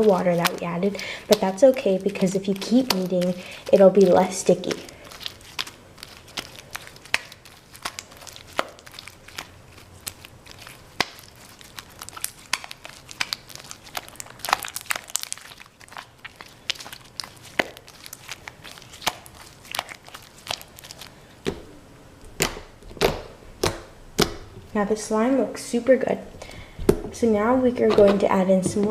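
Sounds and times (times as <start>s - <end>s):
slime clicking and popping: 0.0s - 21.6s, 22.3s - 24.6s.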